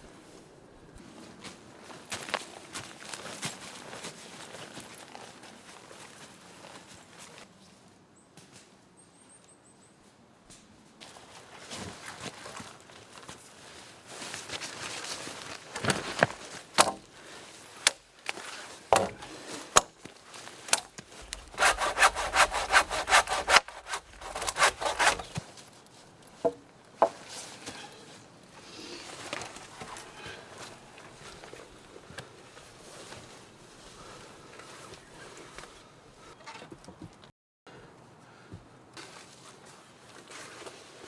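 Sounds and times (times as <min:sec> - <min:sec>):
hand saw cutting wood: 0:20.7 - 0:25.4
wood knocking: 0:21.2 - 0:25.4.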